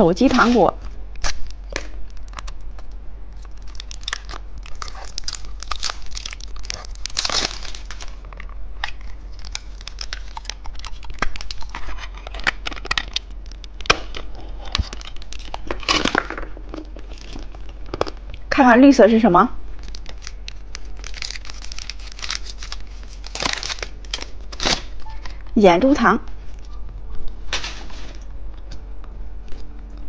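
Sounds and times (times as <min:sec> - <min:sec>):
plastic wrapper crinkling and tearing: 0:00.2 - 0:18.5, 0:19.6 - 0:25.6.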